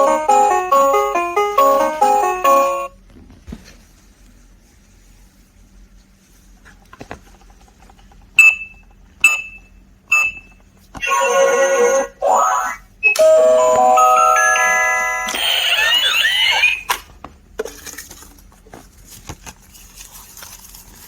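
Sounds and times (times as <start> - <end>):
electronic jingle: 0.0 - 2.9, 13.2 - 16.9
toy beeping tune: 0.0 - 2.9, 11.0 - 16.9.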